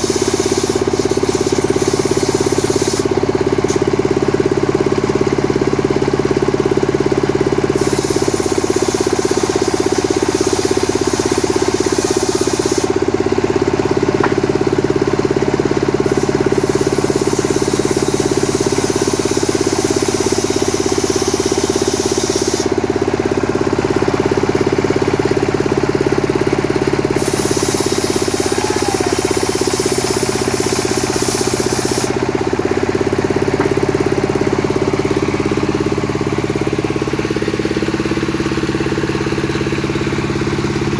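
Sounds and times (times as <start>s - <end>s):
chainsaw running: 0.0s - 40.9s
chain cutting wood: 27.2s - 32.2s.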